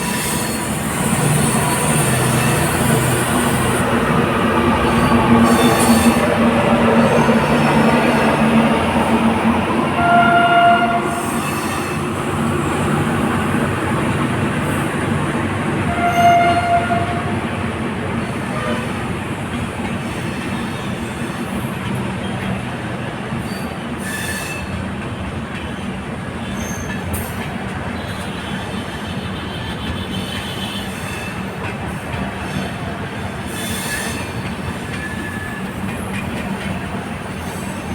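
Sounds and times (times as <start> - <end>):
train rumbling on track: 0.0 - 37.9
train horn blasts: 9.9 - 12.0, 15.8 - 17.5, 18.4 - 19.1.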